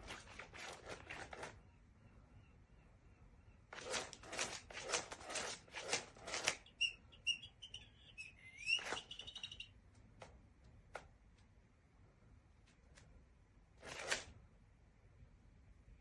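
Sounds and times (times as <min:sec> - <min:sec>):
rustling scrapes: 0:00.0 - 0:01.6
toy mouse squeaking: 0:06.2 - 0:09.8.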